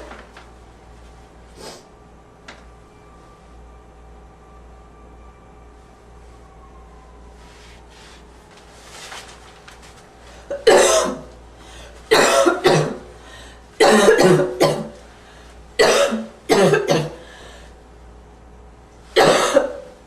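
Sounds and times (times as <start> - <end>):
person coughing harshly: 10.5 - 11.3, 12.1 - 13.1, 13.8 - 15.0, 15.8 - 17.3, 19.2 - 19.9
person breathing quietly: 11.5 - 12.1, 13.2 - 13.8, 15.1 - 15.7, 17.2 - 17.9.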